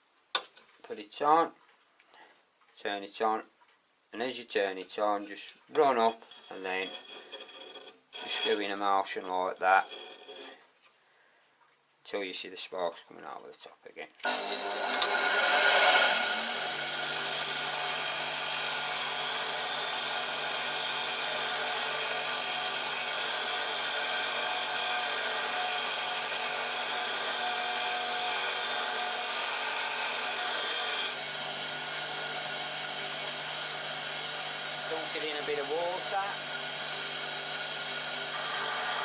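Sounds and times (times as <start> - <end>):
bench grinder grinding steel: 5.8 - 10.7, 14.2 - 39.0.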